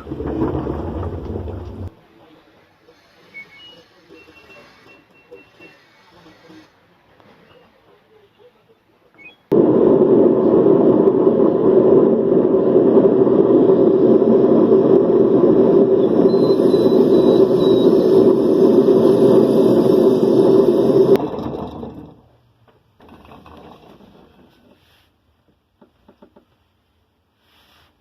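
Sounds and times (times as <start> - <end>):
washing machine drum spinning: 0.0 - 1.9, 9.5 - 22.2.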